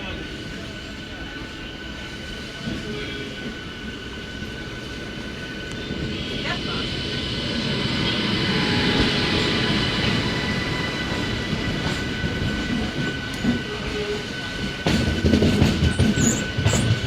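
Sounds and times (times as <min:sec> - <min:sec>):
train rumbling on tracks: 0:00.0 - 0:17.0.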